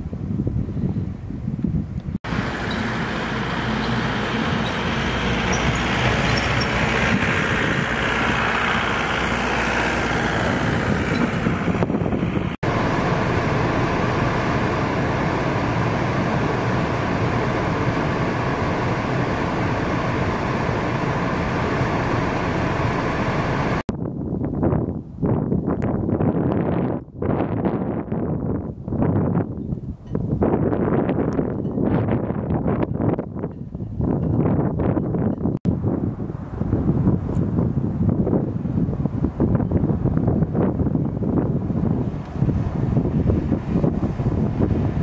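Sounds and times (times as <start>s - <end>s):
vehicle engine passing: 2.3s - 23.8s
engine running with faint whine: 2.3s - 23.9s, 35.0s - 45.0s.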